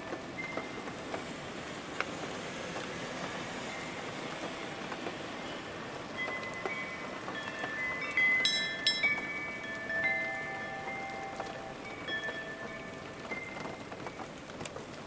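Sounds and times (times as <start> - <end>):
rain pattering: 0.0 - 15.0
ringing chime tones: 6.2 - 14.0.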